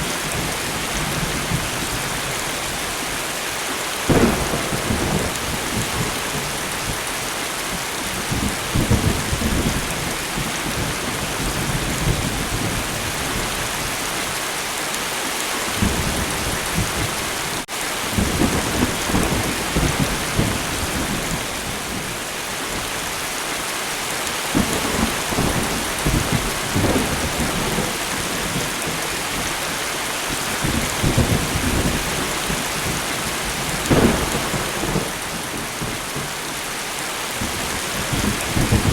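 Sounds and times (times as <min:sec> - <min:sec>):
light rain falling: 0:00.0 - 0:38.9
low thunder rumbling: 0:04.1 - 0:13.8, 0:24.5 - 0:29.7, 0:30.3 - 0:36.6, 0:37.4 - 0:38.9.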